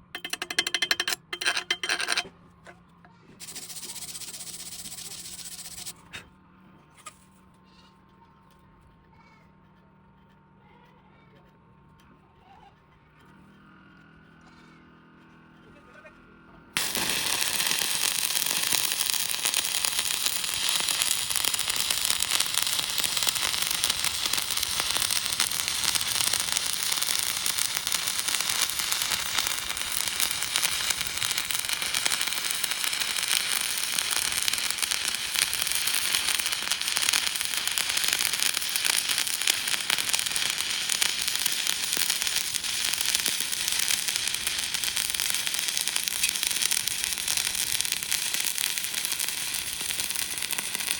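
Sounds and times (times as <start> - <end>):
welding arc crackling: 3.4 - 6.0, 16.8 - 50.9.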